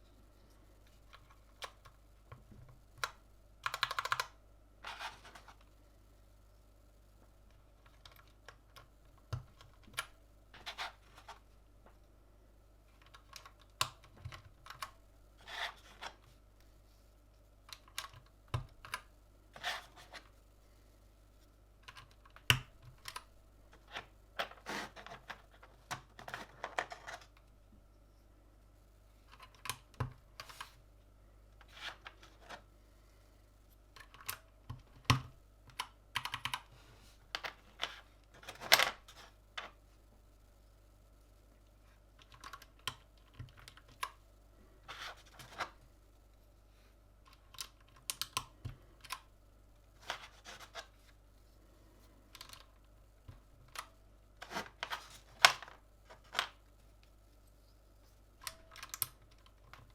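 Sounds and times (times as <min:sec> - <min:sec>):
mechanical keyboard clicking: 0:03.0 - 0:04.4.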